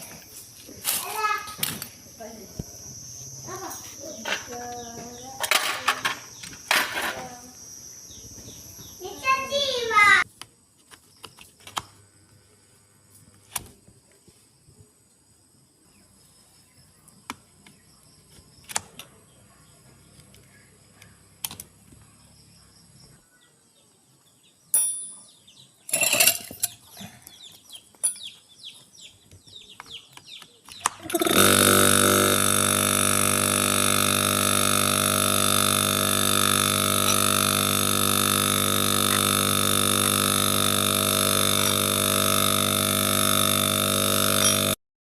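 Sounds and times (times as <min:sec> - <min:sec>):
refrigerator compressor humming: 0:31.1 - 0:44.8.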